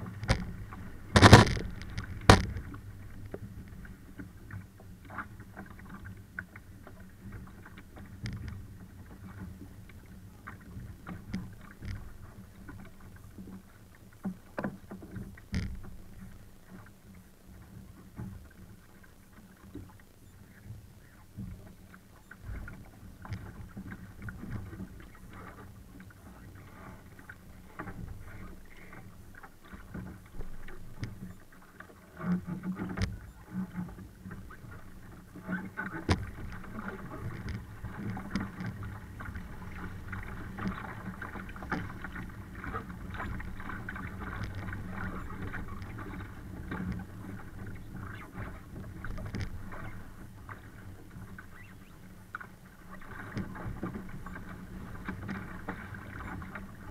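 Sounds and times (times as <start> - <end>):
water slapping against boat hull: 0.0 - 56.9
sharp knocks: 1.1 - 2.6.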